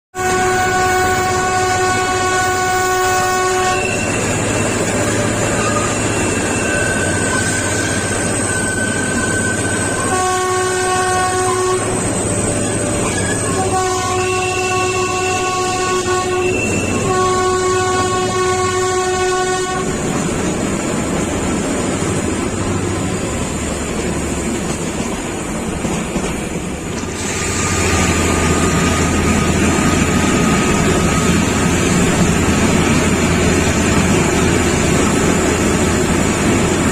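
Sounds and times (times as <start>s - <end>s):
train horn blasts: 0.2s - 20.3s
running train noise: 0.2s - 36.9s.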